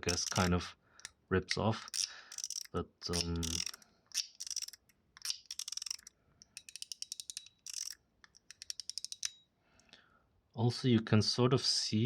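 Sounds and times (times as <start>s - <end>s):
fidget slider sharp clicks: 0.0s - 9.3s.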